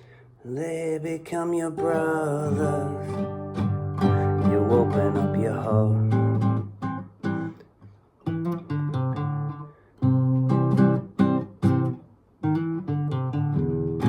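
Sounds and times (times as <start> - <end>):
acoustic guitar strumming chords: 0.1 - 7.6, 8.2 - 14.0.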